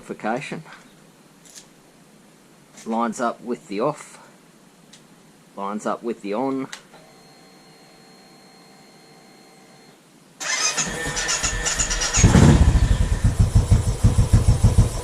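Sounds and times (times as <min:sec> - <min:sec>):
motorcycle engine starting and idling: 0:10.4 - 0:15.0.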